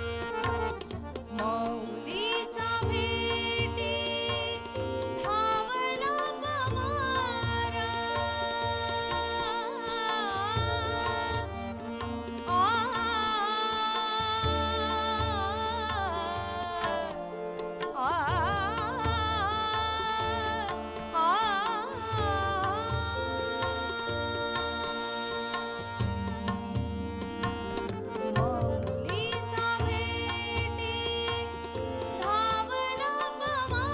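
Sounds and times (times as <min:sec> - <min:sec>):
person singing devotional song: 0:00.0 - 0:33.9
tabla beats: 0:00.0 - 0:33.9.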